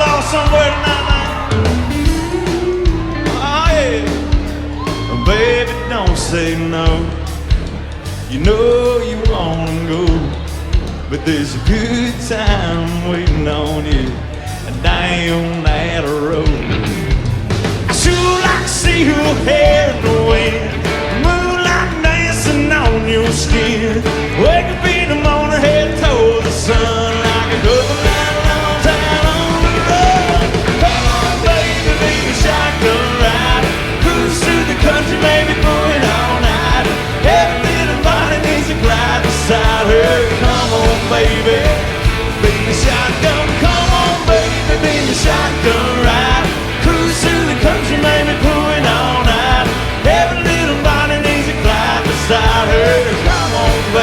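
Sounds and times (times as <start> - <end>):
bass: 0.0 - 54.0
steady drum beat: 0.0 - 54.0.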